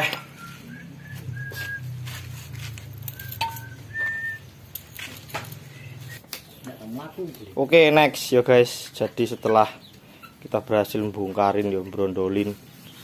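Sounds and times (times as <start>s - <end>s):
whistled notes: 0.0s - 2.3s, 3.0s - 4.6s
metal gearbox parts clicking: 2.8s - 5.6s.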